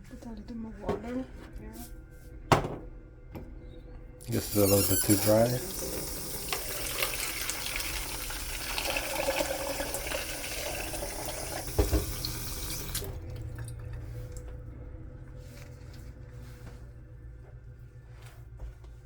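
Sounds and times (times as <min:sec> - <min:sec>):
tap running into container: 0:04.3 - 0:13.1
dull knock: 0:11.8 - 0:12.2.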